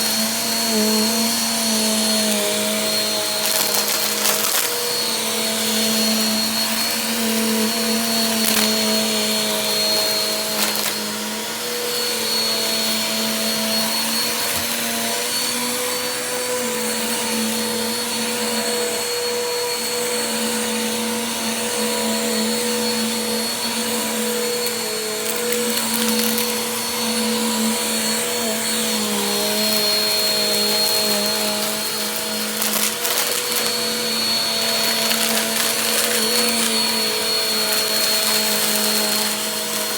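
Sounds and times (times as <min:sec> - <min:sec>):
vacuum cleaner running: 0:00.0 - 0:39.9.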